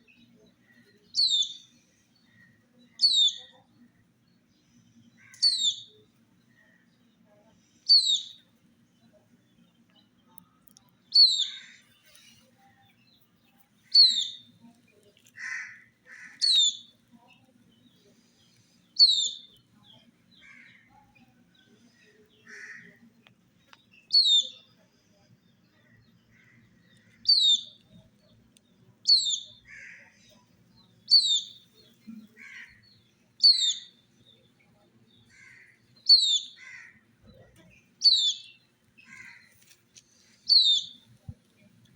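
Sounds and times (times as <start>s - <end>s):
chicks peeping: 35.2s - 41.9s.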